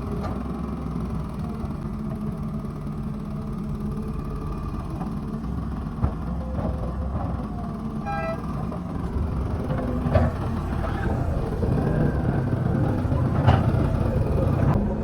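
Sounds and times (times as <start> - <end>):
heavy engine running: 0.0 - 15.0.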